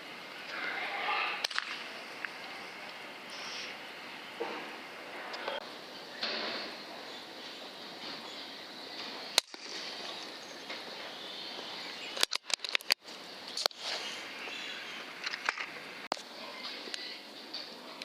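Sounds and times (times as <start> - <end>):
outdoor hiss: 0.0 - 18.0
air rifle shot crack: 9.4 - 10.0
sharp clicks: 12.2 - 13.8.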